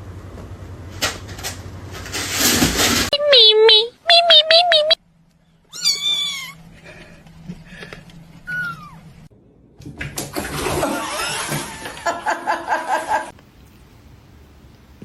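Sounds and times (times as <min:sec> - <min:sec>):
cat meowing: 0:03.1 - 0:05.0, 0:05.7 - 0:06.6, 0:08.5 - 0:09.0.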